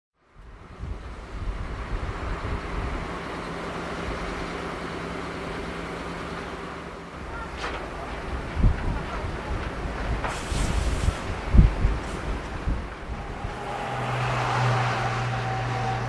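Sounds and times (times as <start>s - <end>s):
wind buffeting microphone: 0.5s - 3.2s, 7.9s - 16.0s.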